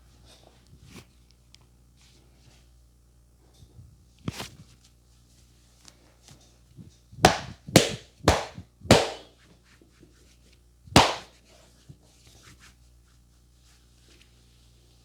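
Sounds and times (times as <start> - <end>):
loud hand slaps on body: 7.3 - 9.3, 11.0 - 11.3.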